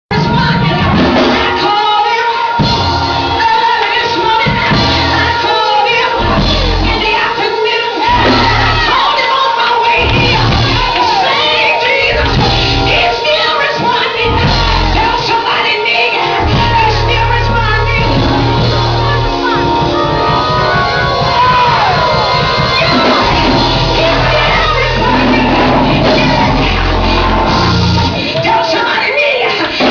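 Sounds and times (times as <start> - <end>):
gospel singing over a band: 0.1 - 29.9
low bass notes: 6.2 - 7.1, 8.1 - 8.9, 10.0 - 11.0, 12.1 - 13.2, 14.2 - 15.2, 16.4 - 28.2.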